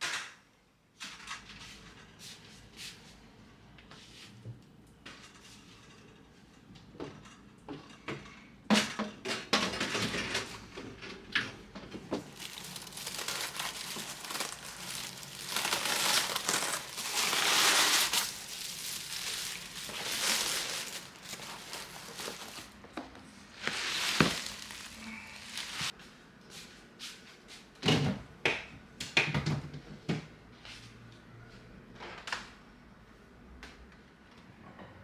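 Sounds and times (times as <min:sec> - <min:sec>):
packaging crinkling rustle: 0:12.1 - 0:25.9.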